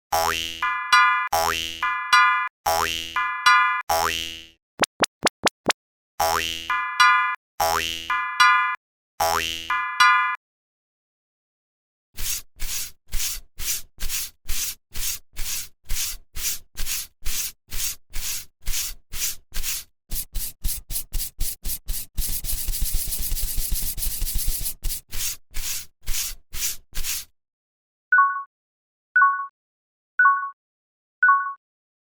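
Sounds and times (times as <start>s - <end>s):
hissy cartoon scraping strokes: 12.2s - 27.3s.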